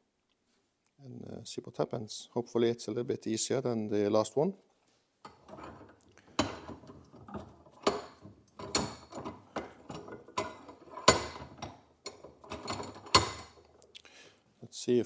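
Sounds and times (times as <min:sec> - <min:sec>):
hand tools knocking on steel bolt: 0:05.3 - 0:13.6
metal rattling: 0:05.3 - 0:13.8.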